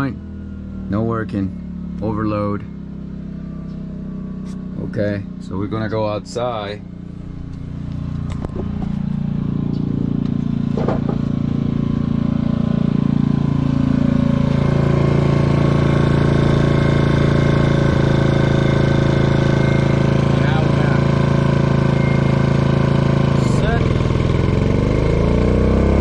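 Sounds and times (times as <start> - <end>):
generator engine running: 0.0 - 26.0
knocks: 10.7 - 11.3.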